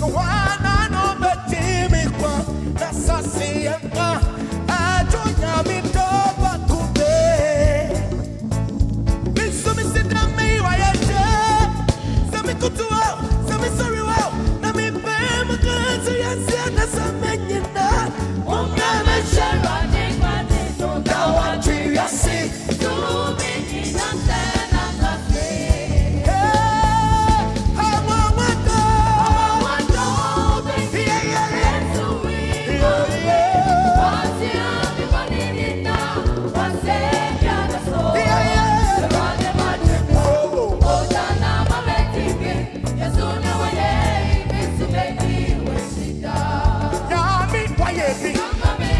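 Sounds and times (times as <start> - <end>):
gospel singing: 0.0 - 48.9
keyboard: 0.0 - 48.9
steady beat: 17.9 - 48.9.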